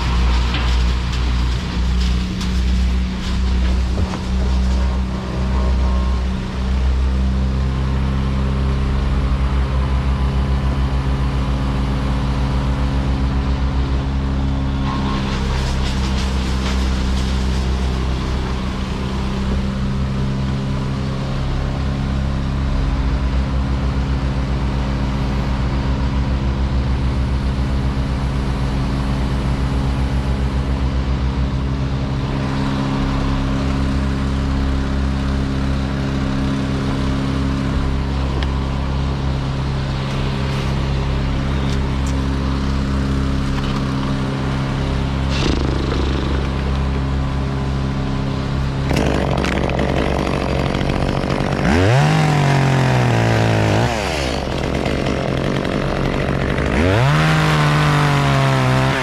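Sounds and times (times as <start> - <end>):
engine running steadily: 0.0 - 59.0
short noise: 45.2 - 47.4.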